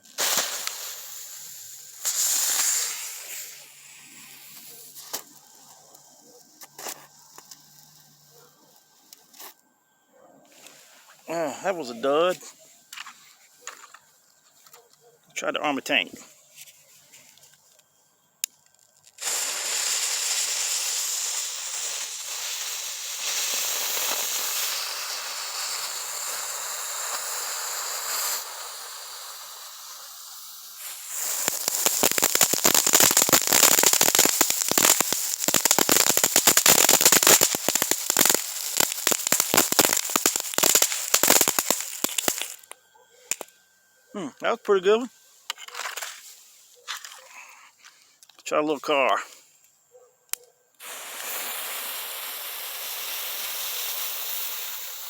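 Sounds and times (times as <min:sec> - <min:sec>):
firework crackling pops: 0:00.0 - 0:09.6, 0:18.4 - 0:43.5, 0:50.3 - 0:55.0
firework spraying sparks hiss: 0:00.0 - 0:09.6, 0:10.5 - 0:14.7, 0:18.9 - 0:43.5, 0:44.8 - 0:47.2, 0:50.8 - 0:55.0.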